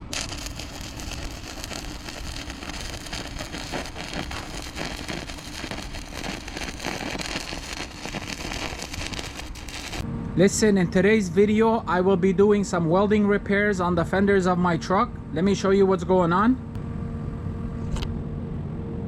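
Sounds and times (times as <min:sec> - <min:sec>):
welding arc crackling: 0:00.0 - 0:10.0.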